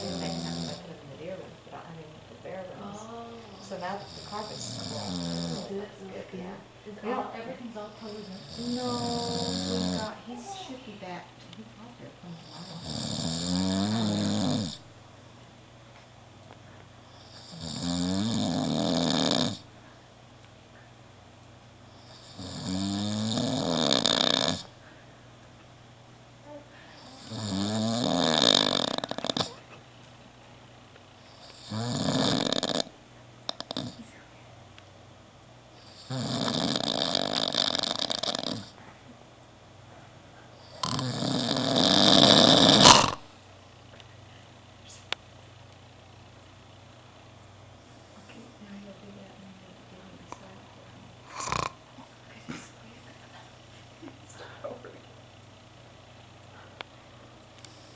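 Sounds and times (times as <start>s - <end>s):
man snoring: 0.0s - 0.8s, 4.0s - 5.7s, 8.3s - 10.2s, 12.6s - 14.9s, 17.2s - 19.7s, 22.0s - 24.8s, 27.0s - 29.6s, 31.4s - 32.9s, 33.5s - 34.0s, 35.8s - 38.8s, 40.6s - 43.3s, 51.2s - 51.8s.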